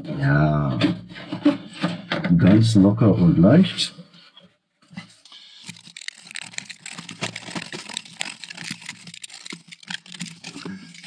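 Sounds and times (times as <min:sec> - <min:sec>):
hose crinkling rustles: 0:04.8 - 0:11.0
small clicks: 0:05.3 - 0:11.0.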